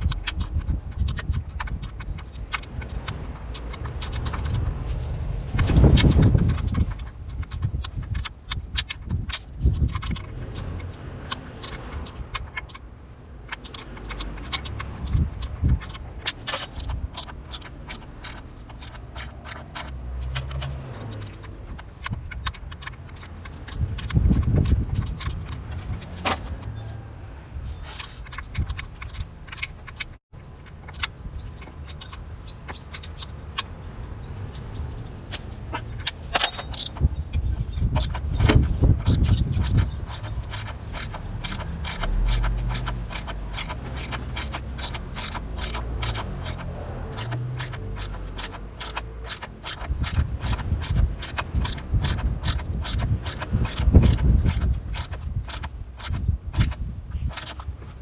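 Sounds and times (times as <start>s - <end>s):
metal tools clinking: 13.5s - 27.0s, 35.7s - 38.4s.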